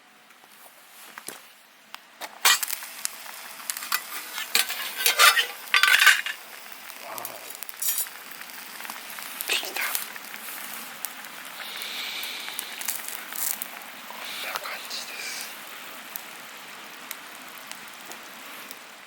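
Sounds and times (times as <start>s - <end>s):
metal utensil scraping a pot: 3.8s - 6.4s.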